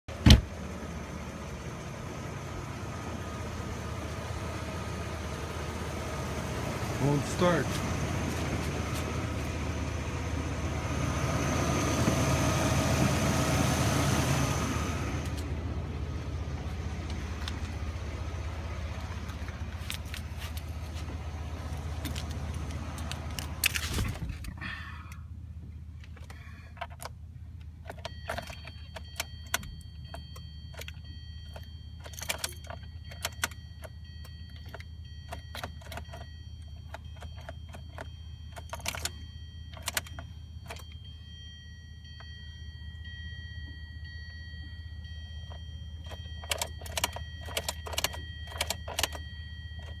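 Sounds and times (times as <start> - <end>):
low steady hum: 0.1 - 50.0
sharp ignition clicks: 26.0 - 41.2, 44.0 - 50.0
high electronic warning tone: 28.0 - 50.0
keys jangling: 34.5 - 40.9.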